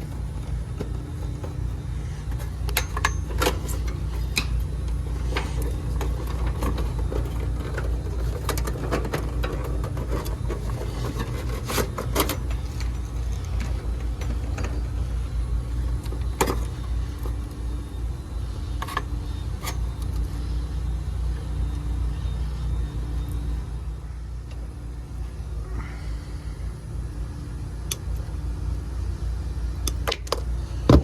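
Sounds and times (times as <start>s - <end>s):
handling clicks and knocks: 0.0s - 15.1s, 15.7s - 17.7s
motor humming: 0.0s - 31.0s.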